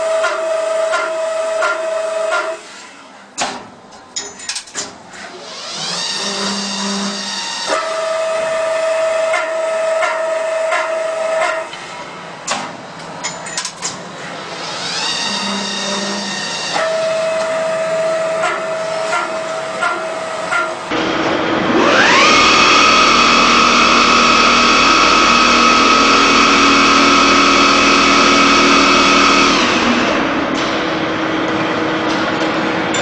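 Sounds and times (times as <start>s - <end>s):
lathe humming: 14.7s - 30.6s
spindle whining: 21.7s - 30.4s.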